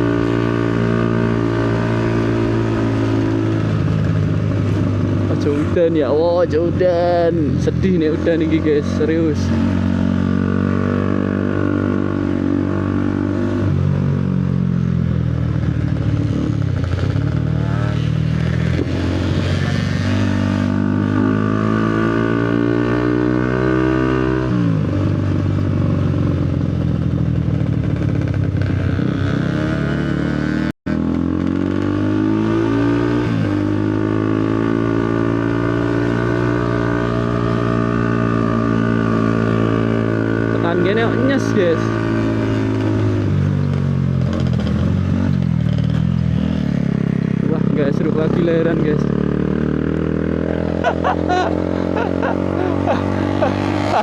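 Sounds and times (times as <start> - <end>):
motorcycle engine accelerating: 0.0 - 54.0.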